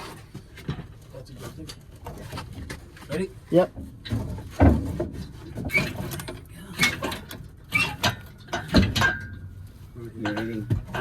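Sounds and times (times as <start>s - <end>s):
engine knocking and creaking on hoist: 5.6s - 9.5s
short squeak: 5.7s - 6.0s, 7.7s - 8.2s.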